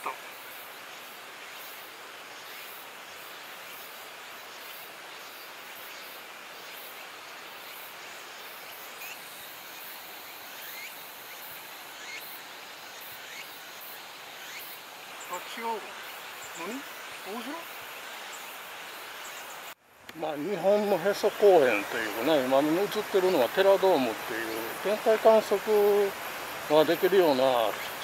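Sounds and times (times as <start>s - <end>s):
faint bird chirps: 0.0s - 19.8s
insects droning: 0.0s - 28.0s.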